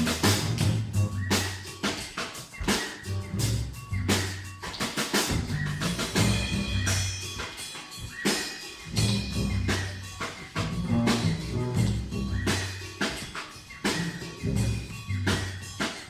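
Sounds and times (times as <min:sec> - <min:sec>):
bass line: 0:00.0 - 0:01.6, 0:03.0 - 0:04.5, 0:05.3 - 0:07.3, 0:08.9 - 0:12.9, 0:13.9 - 0:15.8
drum and percussion beat: 0:00.0 - 0:16.0.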